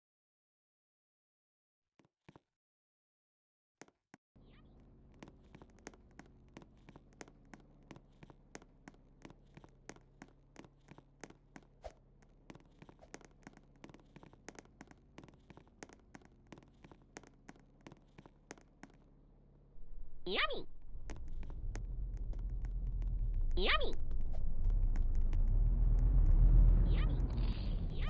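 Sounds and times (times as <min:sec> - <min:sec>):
steady low hum: 0:19.2 - 0:28.0.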